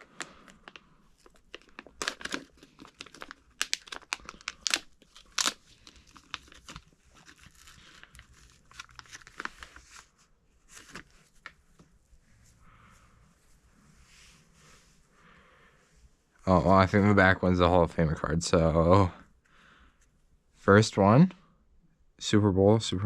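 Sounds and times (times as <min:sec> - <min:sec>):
plastic wrapper tearing and crinkling: 0:00.0 - 0:10.1.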